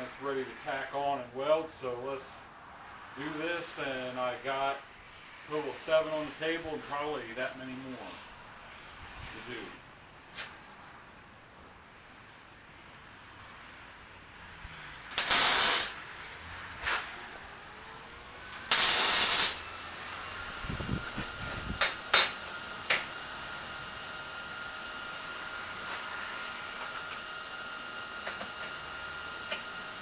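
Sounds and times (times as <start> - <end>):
aerosol spray hissing: 15.1 - 15.9, 18.7 - 20.1
steady machine hum: 15.1 - 16.0, 17.4 - 30.0.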